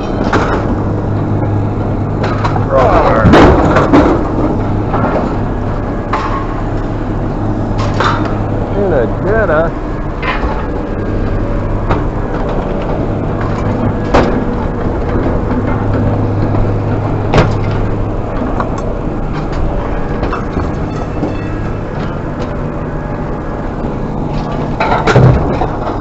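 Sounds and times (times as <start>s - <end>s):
vehicle engine drone: 0.0s - 26.0s.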